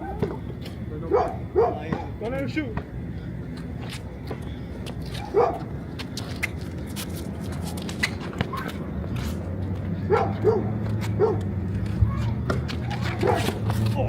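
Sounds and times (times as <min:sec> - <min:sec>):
steady low hum: 0:00.0 - 0:14.0
dog barking: 0:01.1 - 0:02.1, 0:05.2 - 0:05.6, 0:10.1 - 0:11.5, 0:13.1 - 0:13.5.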